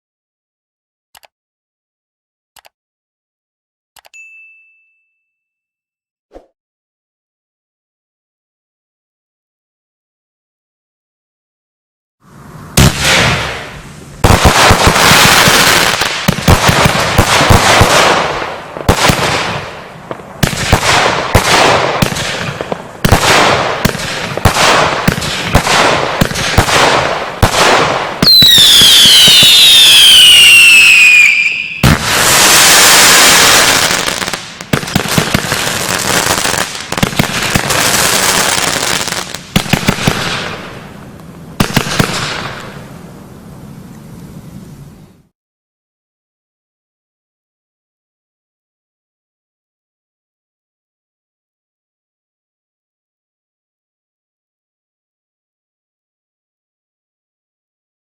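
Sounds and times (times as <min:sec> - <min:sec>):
fireworks launching and bursting: 0:12.4 - 0:43.0
fireworks crackling: 0:12.7 - 0:43.0
whistles falling in pitch: 0:28.2 - 0:31.9.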